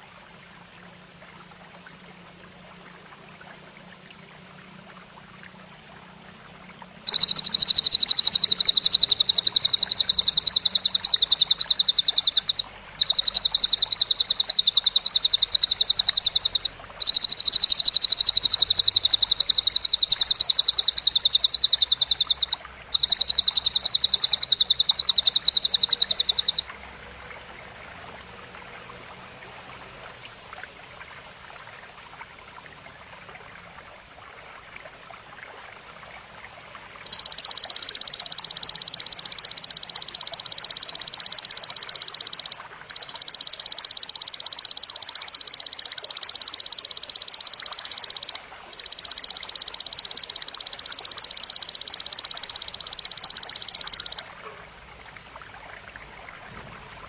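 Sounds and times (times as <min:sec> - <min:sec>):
faint stream-like hiss: 0:00.0 - 0:57.0
grasshopper buzzing trill: 0:07.1 - 0:26.6, 0:37.1 - 0:54.3.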